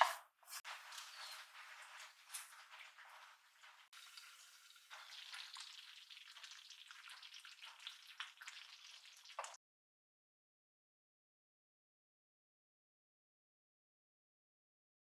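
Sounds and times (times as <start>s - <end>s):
food frying: 0.0s - 9.6s.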